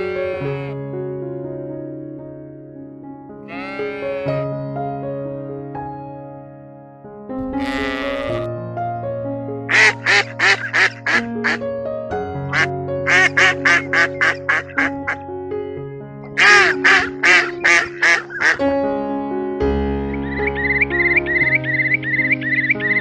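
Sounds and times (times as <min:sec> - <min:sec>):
duck quacking: 0:00.0 - 0:00.8, 0:03.5 - 0:04.4, 0:07.4 - 0:08.5, 0:09.7 - 0:11.6, 0:12.5 - 0:15.2, 0:16.4 - 0:18.6
background music with held notes: 0:00.0 - 0:01.4, 0:02.8 - 0:23.0.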